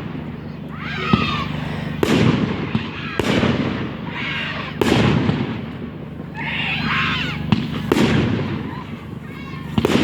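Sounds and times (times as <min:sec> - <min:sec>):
firework bangs: 0:00.0 - 0:10.0
firework crackle and rumble: 0:00.0 - 0:10.0.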